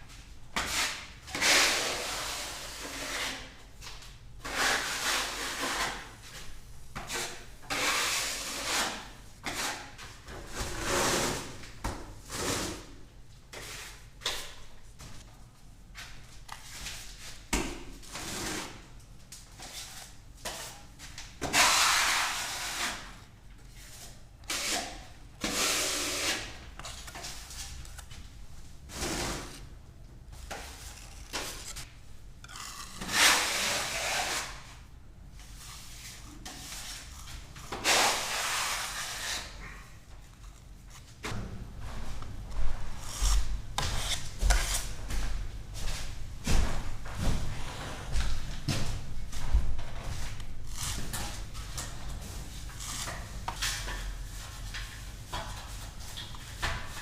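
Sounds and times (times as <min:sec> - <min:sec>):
hand tools scraping plaster: 0:04.4 - 0:06.1, 0:07.1 - 0:09.9, 0:24.5 - 0:27.2, 0:30.5 - 0:31.9.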